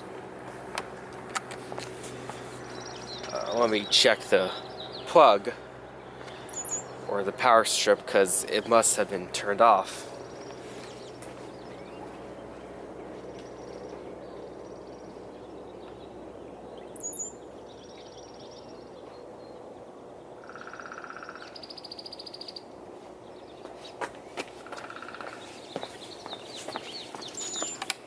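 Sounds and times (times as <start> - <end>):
table fan humming: 0.0 - 17.6
animal calls in rapid trills: 6.4 - 7.1, 16.9 - 17.4.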